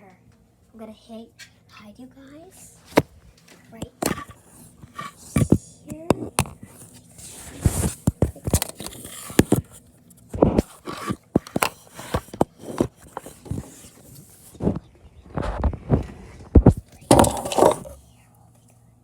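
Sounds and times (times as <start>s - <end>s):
camera handling knocks and scrapes: 3.8s - 14.8s, 15.4s - 18.0s.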